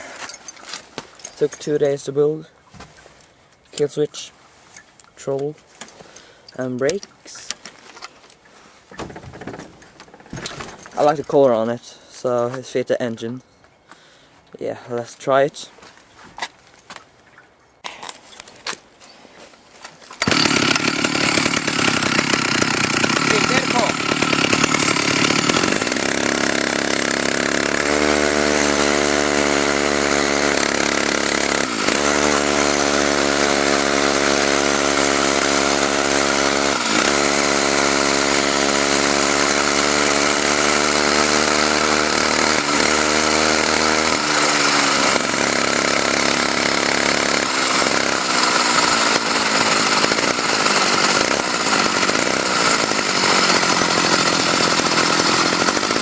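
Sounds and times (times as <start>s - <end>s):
two-stroke engine running at high revs: 20.2s - 56.0s.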